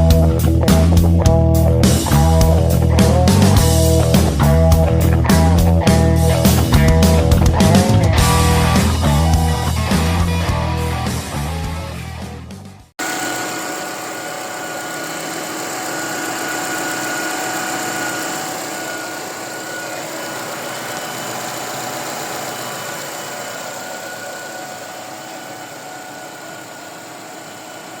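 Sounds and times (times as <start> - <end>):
thin steady whine: 13.0 - 28.0
car engine idling: 17.8 - 28.0.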